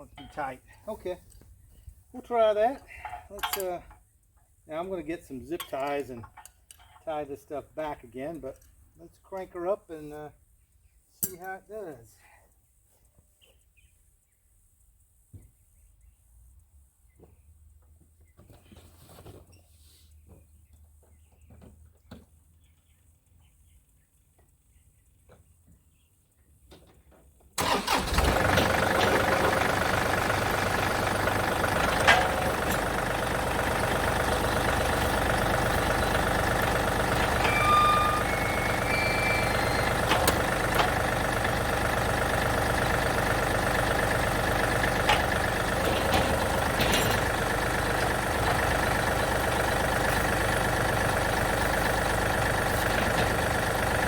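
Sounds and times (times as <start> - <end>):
tractor engine starting and running: 0.0 - 1.2, 2.2 - 4.0, 27.6 - 54.0.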